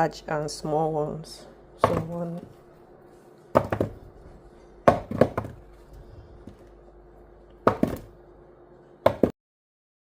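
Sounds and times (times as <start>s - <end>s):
faint steady hum: 0.0s - 9.3s
potatoes knocking together: 1.8s - 2.4s, 3.5s - 4.1s, 4.8s - 5.7s, 7.6s - 8.2s, 9.0s - 9.3s.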